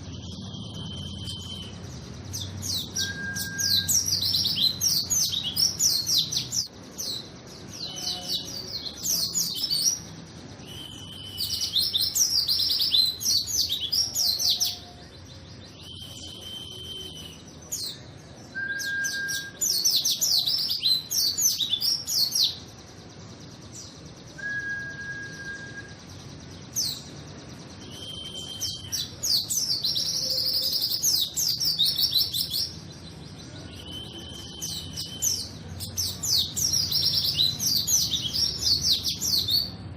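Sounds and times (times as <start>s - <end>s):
bird twittering: 0.0s - 39.8s
bird whistles: 2.4s - 7.2s, 7.8s - 15.0s, 15.7s - 22.5s, 24.3s - 26.1s, 27.8s - 32.8s, 33.5s - 39.8s.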